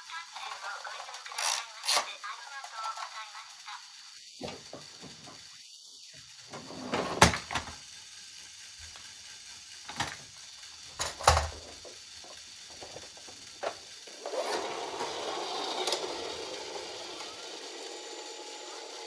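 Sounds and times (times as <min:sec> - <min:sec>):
small toy motor whirring: 0:00.0 - 0:19.0
plastic toys clicking and knocking: 0:00.4 - 0:03.2, 0:09.9 - 0:10.2, 0:10.9 - 0:13.9.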